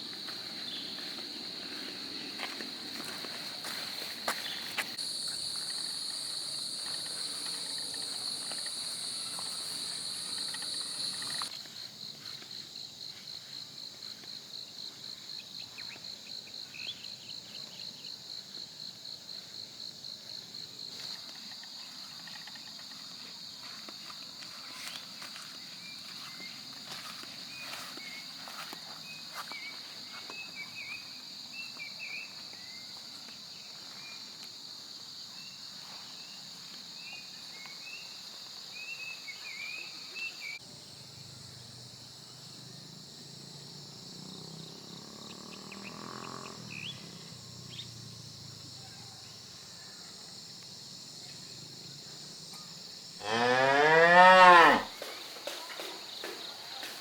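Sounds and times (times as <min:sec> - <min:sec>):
insect chorus: 0:00.0 - 0:57.0
small birds chirping: 0:04.4 - 0:11.5
cow mooing: 0:53.2 - 0:54.9.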